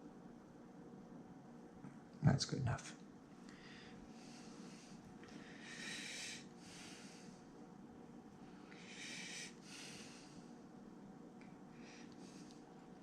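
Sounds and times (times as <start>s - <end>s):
breathing through the nose: 8.8s - 10.5s.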